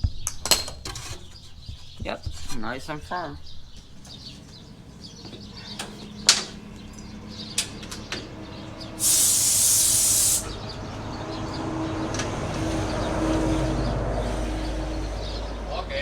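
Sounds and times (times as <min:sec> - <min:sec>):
fitting clicks and knocks: 0:00.1 - 0:02.7, 0:05.2 - 0:08.4
compressed air hissing from hose: 0:09.0 - 0:10.7.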